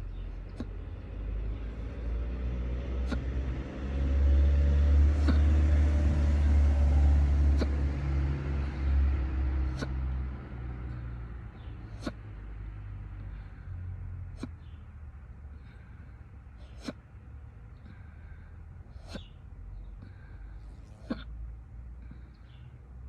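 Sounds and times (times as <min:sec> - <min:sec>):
steady low rumble: 0:00.0 - 0:23.0.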